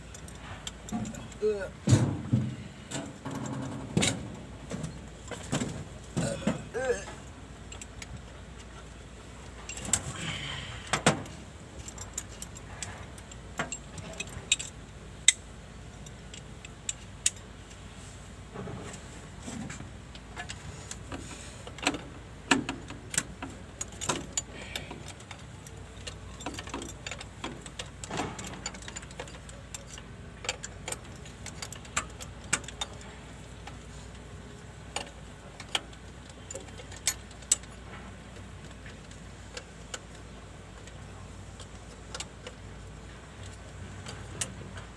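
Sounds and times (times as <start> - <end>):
low steady hum: 0.0 - 44.9
metal tools clinking and knocking: 11.2 - 14.8, 23.8 - 34.2.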